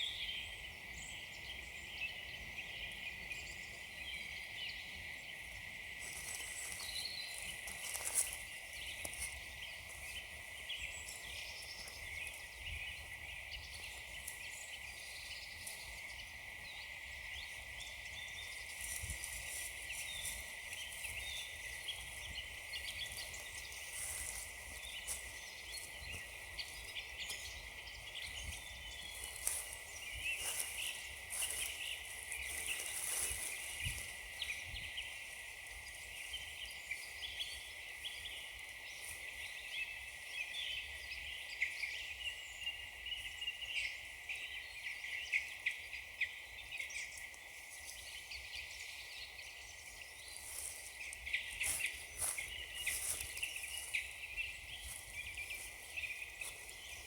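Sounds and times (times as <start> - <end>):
faint bird chirps: 0.0 - 57.0
footsteps crunching on frozen leaves: 5.9 - 16.5, 17.6 - 37.2, 50.0 - 57.0.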